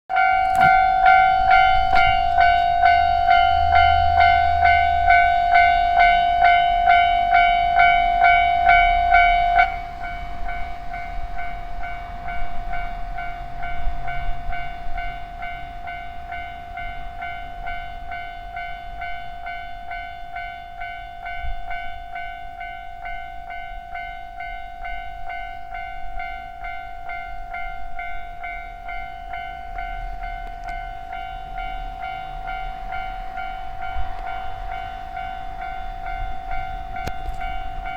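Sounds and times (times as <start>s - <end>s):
level-crossing alarm bell ringing: 0.1s - 37.9s.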